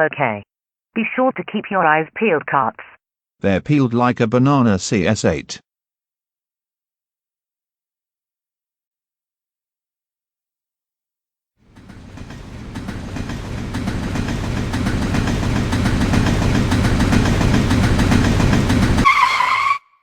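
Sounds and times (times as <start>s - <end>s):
wheels clicking over rail joints: 11.7s - 19.1s
train rumbling on rails: 11.7s - 19.7s.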